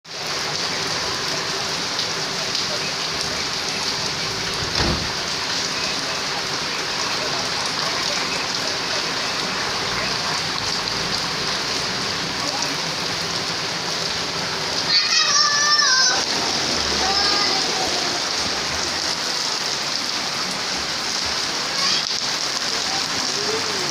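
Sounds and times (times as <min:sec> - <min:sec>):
rain pattering on ground: 0:00.0 - 0:23.9
dull thump: 0:04.6 - 0:05.2.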